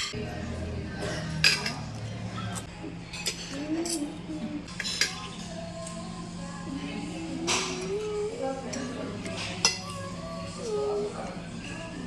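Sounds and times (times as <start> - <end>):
cutlery clinking on plates: 1.0 - 4.1, 4.7 - 5.6, 7.4 - 10.1.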